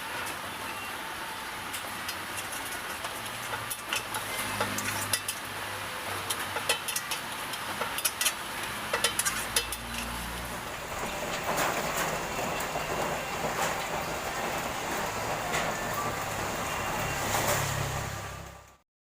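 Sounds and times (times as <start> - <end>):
heavy rain hissing: 10.0 - 18.6.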